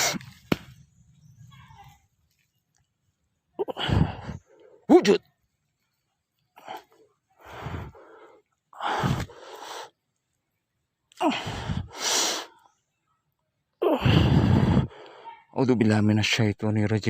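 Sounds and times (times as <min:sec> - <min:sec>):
man breathing heavily: 0:03.6 - 0:04.9, 0:06.6 - 0:10.0, 0:11.2 - 0:12.7, 0:13.8 - 0:15.4.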